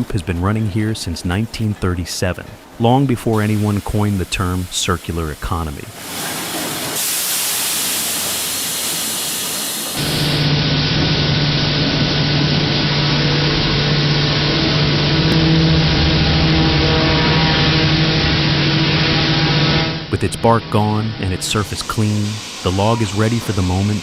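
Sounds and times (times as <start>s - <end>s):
steady hiss: 0.0s - 10.5s, 20.1s - 24.0s
sawmill machinery humming: 3.3s - 24.0s.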